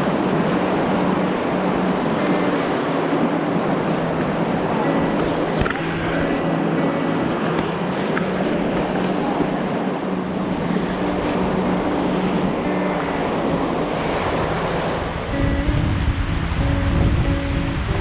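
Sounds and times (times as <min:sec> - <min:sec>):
river water rushing: 0:00.0 - 0:18.0
wind buffeting microphone: 0:00.0 - 0:18.0.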